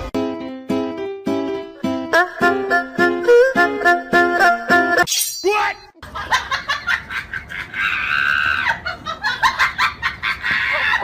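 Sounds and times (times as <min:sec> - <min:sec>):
people laughing hard: 0:06.0 - 0:11.0.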